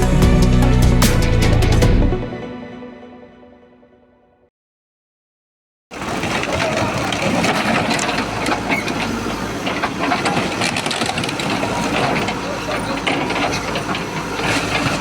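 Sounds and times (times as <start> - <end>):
intro music: 0.0 - 4.4.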